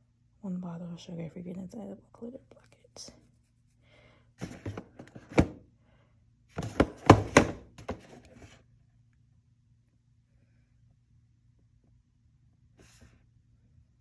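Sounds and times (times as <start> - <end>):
objects knocking on hard surface: 6.6 - 8.2.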